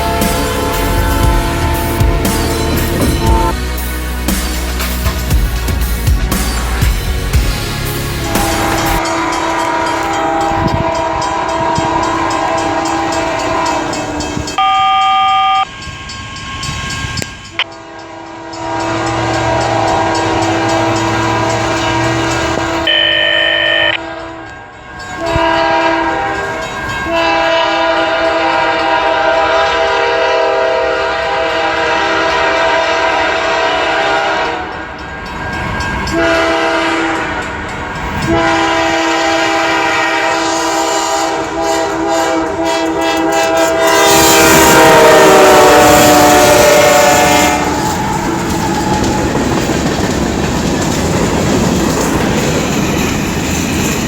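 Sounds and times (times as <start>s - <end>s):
freight car wheels rumbling: 0.0s - 3.6s, 47.6s - 54.0s
locomotive air horn blasts: 0.0s - 3.6s, 8.2s - 15.7s, 17.5s - 24.6s, 25.2s - 34.8s, 36.1s - 37.5s, 38.2s - 49.1s.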